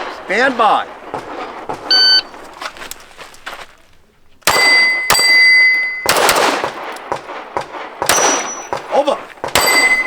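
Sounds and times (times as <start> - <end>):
pistol shots: 4.4 - 10.0
steel plates ringing: 9.6 - 10.0.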